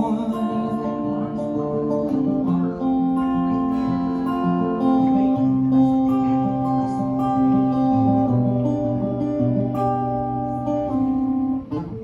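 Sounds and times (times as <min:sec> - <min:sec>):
finger-picked acoustic guitar: 0:00.0 - 0:12.0.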